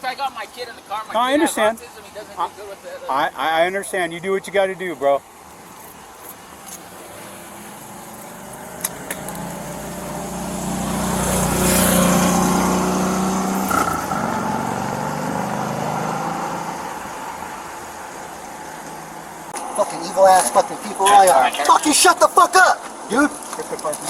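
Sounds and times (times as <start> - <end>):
car driving past: 6.9 - 19.6.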